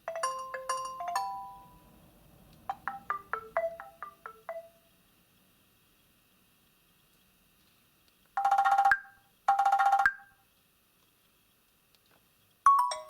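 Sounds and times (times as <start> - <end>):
phone ringtone melody: 0.0 - 1.9, 2.7 - 4.8, 8.4 - 10.3, 12.7 - 13.0.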